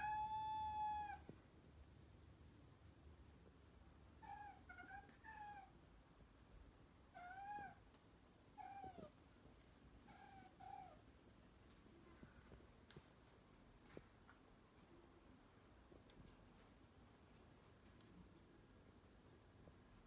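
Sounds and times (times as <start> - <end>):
cat meowing: 0.0 - 1.3.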